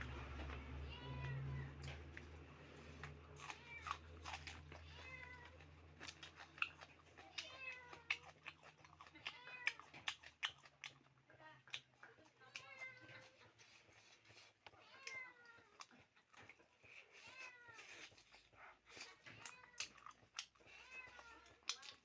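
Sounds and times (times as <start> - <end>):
cat meowing: 0.5 - 2.0, 3.4 - 6.1, 7.2 - 8.3, 9.0 - 10.0, 14.7 - 15.9, 20.6 - 21.8
cat chewing clicks: 3.0 - 13.4.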